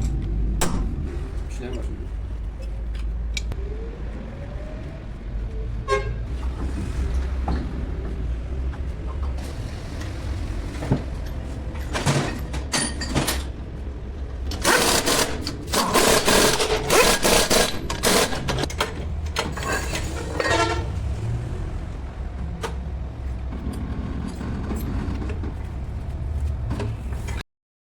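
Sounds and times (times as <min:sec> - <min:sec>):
steady low hum: 0:00.0 - 0:05.8
metallic clattering and knocks: 0:10.9 - 0:13.8.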